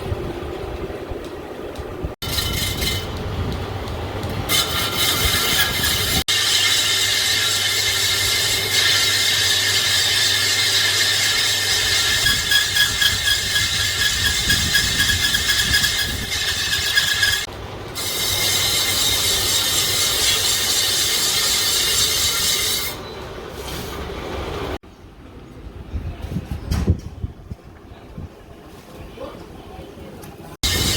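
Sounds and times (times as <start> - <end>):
lathe cutting tool squealing on metal: 2.2 - 3.2, 4.5 - 24.0, 30.6 - 30.9.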